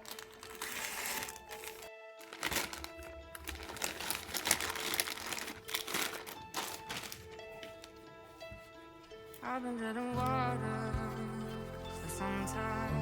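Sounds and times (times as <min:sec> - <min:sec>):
plastic packaging crinkling: 0:00.0 - 0:08.1
background music with held tones: 0:00.0 - 0:13.0.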